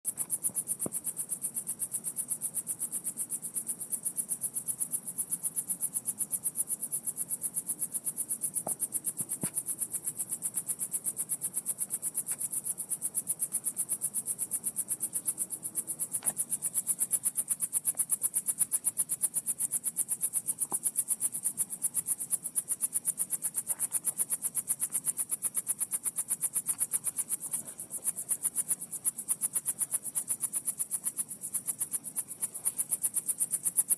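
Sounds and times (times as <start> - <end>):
crickets chirping: 0.1 - 33.9
faint ticks: 12.2 - 12.7.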